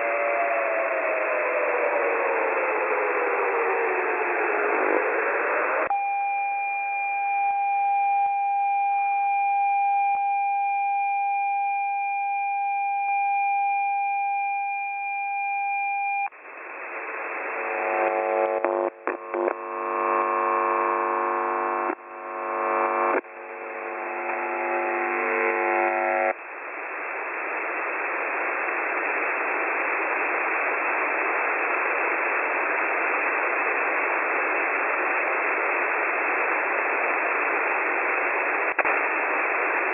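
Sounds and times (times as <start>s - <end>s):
steady radio tone: 14.6s - 39.9s
radio static hiss: 16.3s - 39.9s
harsh many-toned radio sound: 16.6s - 39.9s.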